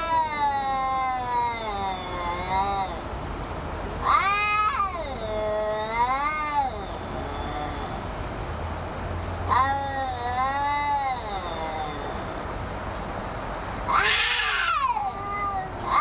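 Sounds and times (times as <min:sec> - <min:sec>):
cat yowling: 0:00.0 - 0:03.0, 0:04.0 - 0:08.0, 0:09.4 - 0:12.4, 0:13.8 - 0:16.0.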